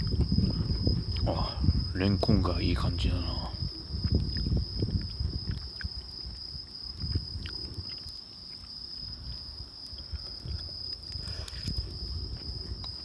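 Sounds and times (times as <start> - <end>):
low rumbles: 0.0 - 8.1
insects chirring: 0.0 - 13.0.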